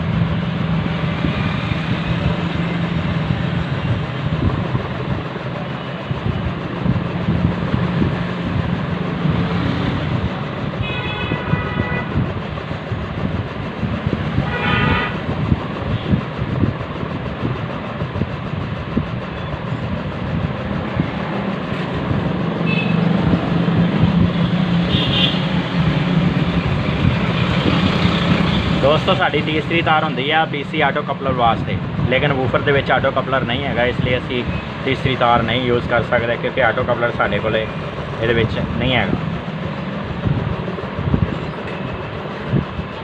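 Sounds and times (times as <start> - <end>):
traffic rumble: 0.0 - 43.0
vehicle horns tooting: 10.8 - 12.1, 14.4 - 15.2, 22.6 - 23.0.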